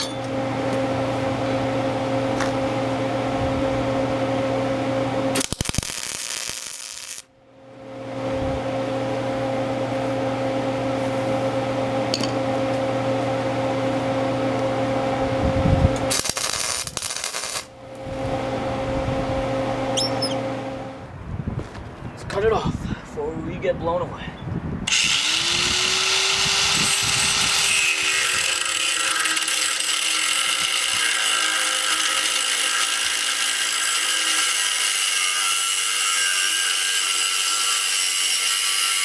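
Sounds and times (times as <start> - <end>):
machine humming: 0.0 - 21.3, 24.5 - 33.8.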